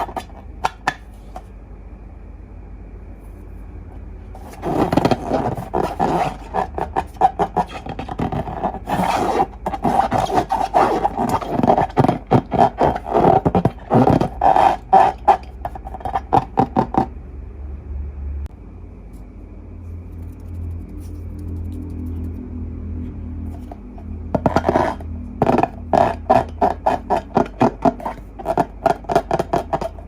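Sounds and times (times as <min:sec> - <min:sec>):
slime and balloons squeaking: 0:04.4 - 0:17.0.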